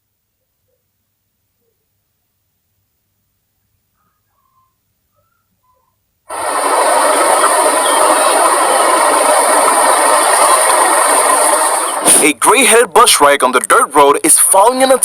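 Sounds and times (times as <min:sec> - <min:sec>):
faint short chirps: 0:04.0 - 0:06.0.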